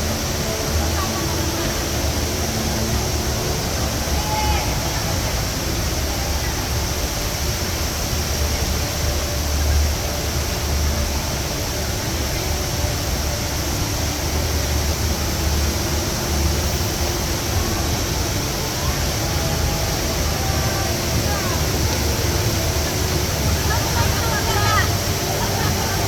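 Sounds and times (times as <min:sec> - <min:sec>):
indoor waterfall rushing: 0:00.0 - 0:26.0.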